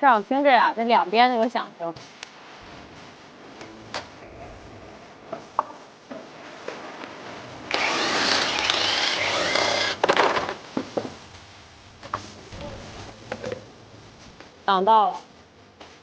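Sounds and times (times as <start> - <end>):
power tool running: 7.7 - 10.0.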